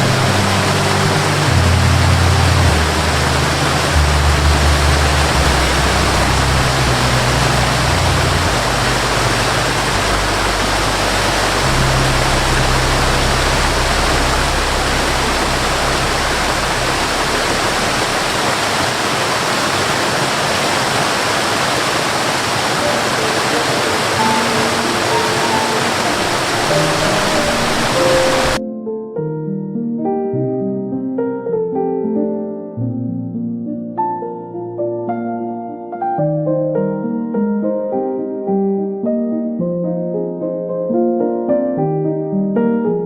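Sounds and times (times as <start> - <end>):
low drone: 0.0 - 19.0, 22.8 - 28.6
rushing water: 0.0 - 28.6.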